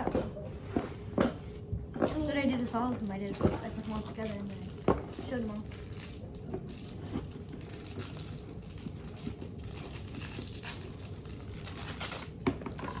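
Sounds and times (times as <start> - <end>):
crinkling and rustling: 0.1 - 13.0.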